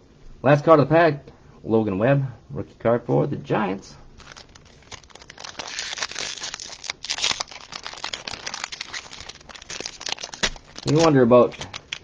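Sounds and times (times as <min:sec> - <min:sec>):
foil wrapper crinkling and tearing: 0:04.1 - 0:12.0.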